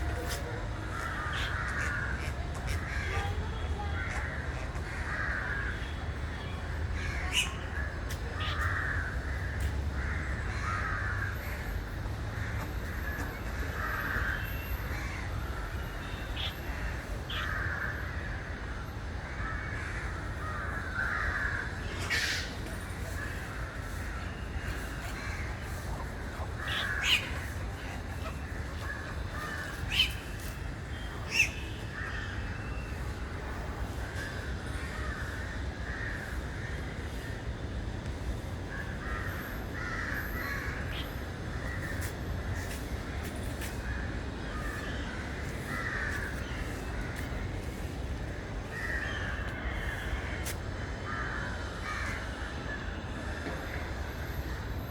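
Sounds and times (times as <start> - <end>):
aviary birds calling: 0.0 - 11.7, 19.5 - 33.1.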